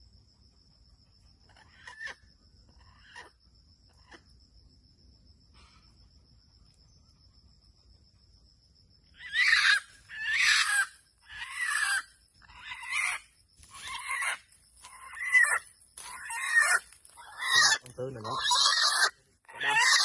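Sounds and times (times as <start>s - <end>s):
faint high insect trill: 0.0s - 20.0s
junglefowl squawking: 9.2s - 20.0s.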